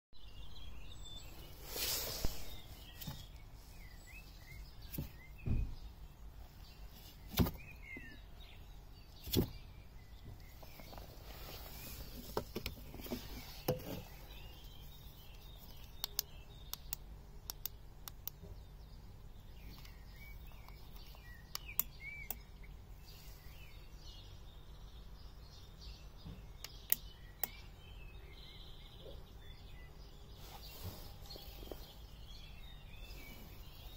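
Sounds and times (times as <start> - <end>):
birds chirping: 0.2 - 33.9
clicks and ticks: 15.8 - 18.4.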